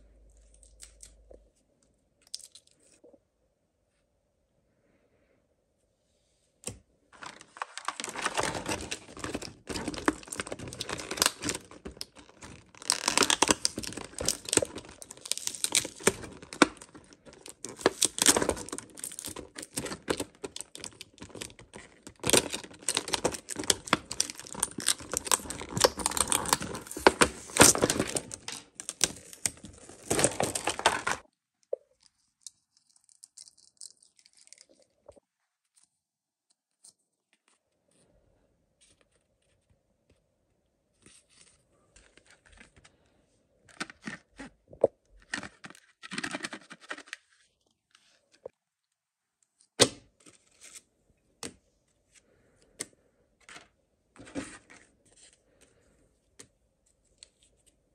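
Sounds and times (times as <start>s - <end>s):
packaging tearing and crinkling: 7.2s - 31.2s.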